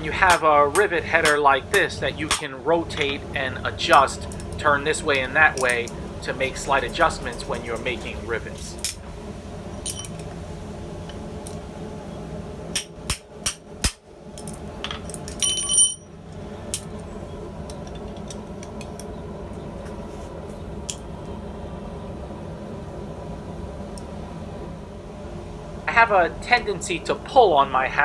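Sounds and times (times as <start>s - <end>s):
steady background hum: 0.0s - 28.0s
ringing metallic clink: 0.2s - 3.1s, 9.9s - 10.2s, 15.2s - 16.2s
hammer striking rivet: 0.3s - 3.2s.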